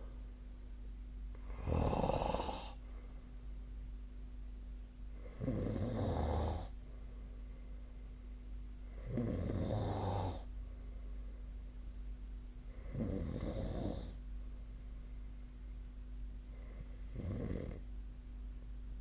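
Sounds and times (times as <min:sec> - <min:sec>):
person snoring: 0:01.4 - 0:02.8, 0:05.2 - 0:06.8, 0:08.9 - 0:10.5, 0:12.7 - 0:14.2, 0:16.6 - 0:17.8.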